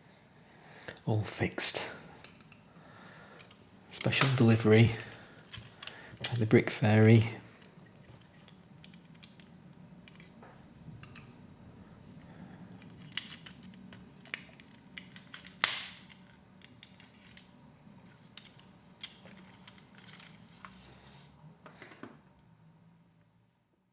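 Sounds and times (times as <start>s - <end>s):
plastic pieces clicking: 3.4s - 6.6s, 7.6s - 10.3s, 12.7s - 17.5s, 18.3s - 20.4s.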